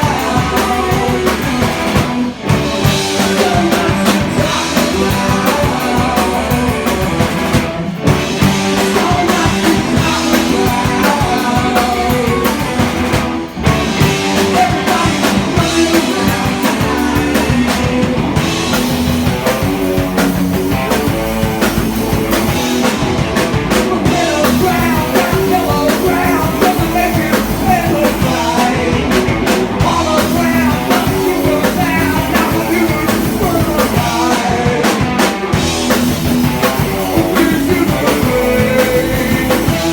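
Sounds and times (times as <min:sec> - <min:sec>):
drum kit beat: 0:00.0 - 0:39.9
live rock band playing: 0:00.0 - 0:39.9.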